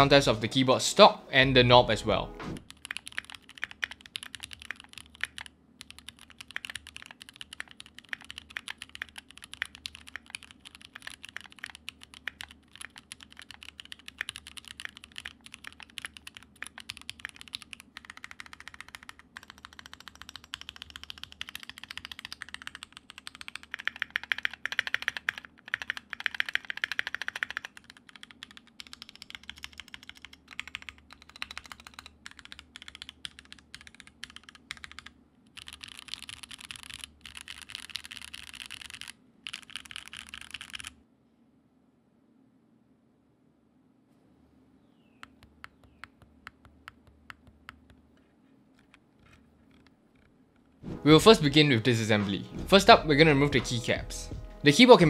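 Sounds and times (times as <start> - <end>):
mechanical keyboard key clacks: 2.7 - 40.9.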